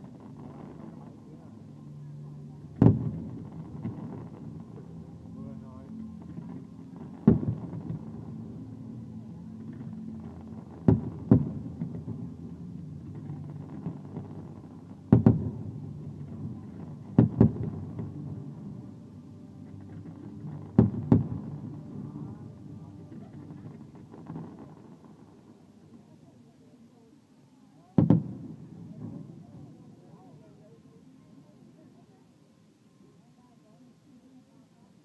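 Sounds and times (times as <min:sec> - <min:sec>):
fireworks bursting: 0:00.0 - 0:01.2, 0:02.7 - 0:04.9, 0:06.2 - 0:08.6, 0:09.6 - 0:18.9, 0:19.7 - 0:22.2, 0:23.1 - 0:25.6, 0:28.0 - 0:29.4
low background noise: 0:00.0 - 0:35.0.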